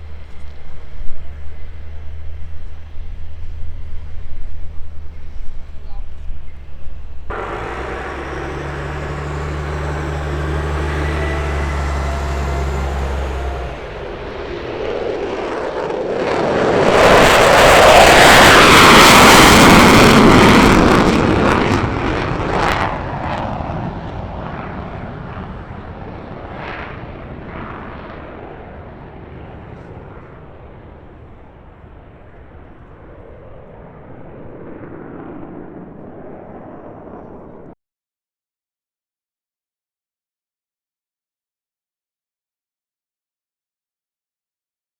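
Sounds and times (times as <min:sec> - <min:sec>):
steady low drone: 0:00.0 - 0:21.8
fighter jet roar: 0:00.0 - 0:37.8.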